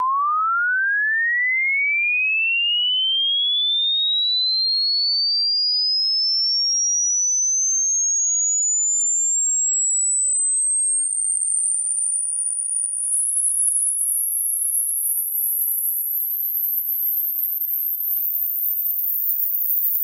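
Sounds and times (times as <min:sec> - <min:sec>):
electronic tone sweeping upward: 0:00.0 - 0:01.8.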